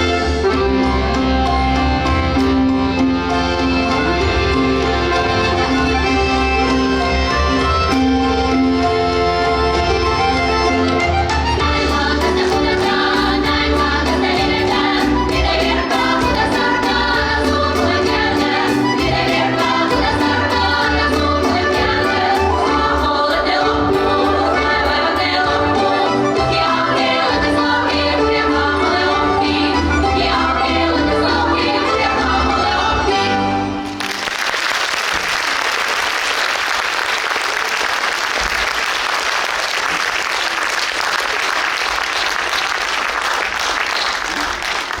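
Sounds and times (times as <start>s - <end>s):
folk-dance music: 0.0s - 45.0s
group of voices singing: 11.6s - 33.8s
audience applause: 33.8s - 45.0s.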